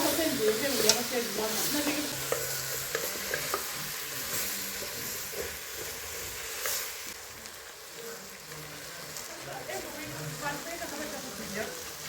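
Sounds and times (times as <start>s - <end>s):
food sizzling in a pan: 0.0s - 12.0s
spoon clicking against pan: 0.5s - 1.1s.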